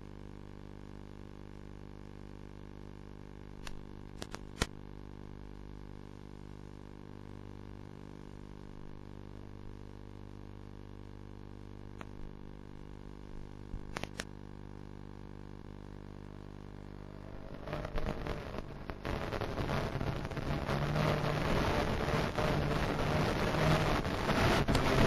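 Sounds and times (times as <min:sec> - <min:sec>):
steady electrical hum: 0:00.0 - 0:25.0
sharp clicks: 0:03.6 - 0:04.7, 0:13.8 - 0:14.3.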